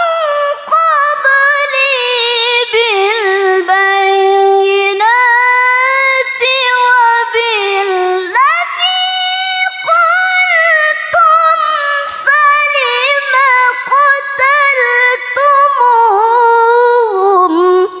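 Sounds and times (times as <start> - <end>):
woman reciting melodically: 0.0 - 18.0.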